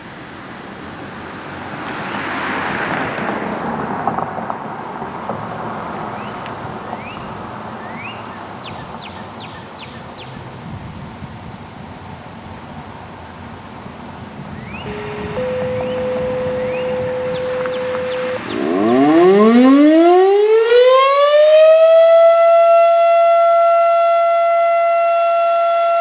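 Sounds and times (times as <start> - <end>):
vehicle passing: 1.2 - 7.7, 13.8 - 22.4
falling high whistles: 14.6 - 20.2
short rising chirps: 14.6 - 20.2.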